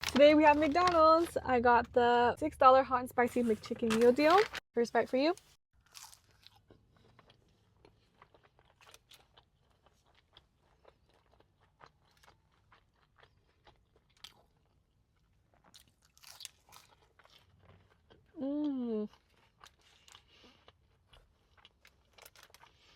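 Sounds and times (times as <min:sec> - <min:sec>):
crunching and chewing sandwich: 0:05.8 - 0:18.4, 0:19.1 - 0:22.9.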